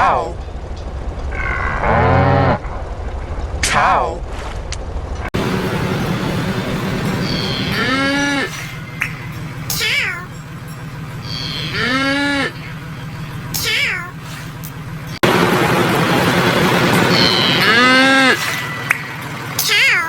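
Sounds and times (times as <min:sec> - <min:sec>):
distorted pitched-up cow moo: 0:01.3 - 0:02.9, 0:05.4 - 0:13.6, 0:16.4 - 0:18.9
steady buzzing noise: 0:05.4 - 0:19.6
high sweeping cry: 0:05.4 - 0:20.0.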